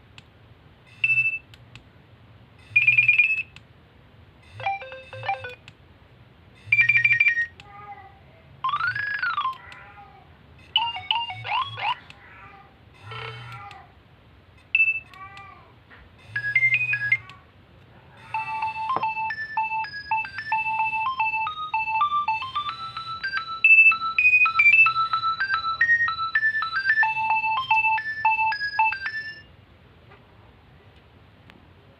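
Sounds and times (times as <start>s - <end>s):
phone ringtone beeping melody: 2.6s - 3.5s, 4.4s - 5.6s, 6.6s - 7.5s, 8.6s - 9.6s, 10.6s - 12.0s, 16.2s - 17.3s, 18.2s - 29.5s.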